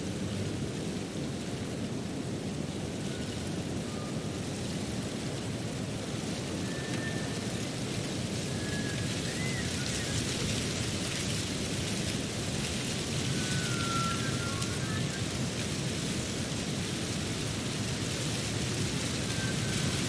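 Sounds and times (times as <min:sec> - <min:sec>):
faint high whistling tones: 0:03.0 - 0:04.4, 0:06.5 - 0:10.6, 0:13.0 - 0:15.3, 0:19.1 - 0:20.0.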